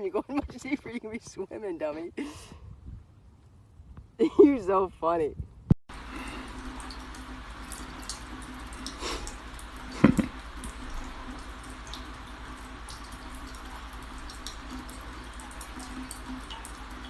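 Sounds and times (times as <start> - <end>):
steady low hum: 5.4 - 17.0
water dripping and splashing: 5.9 - 17.0.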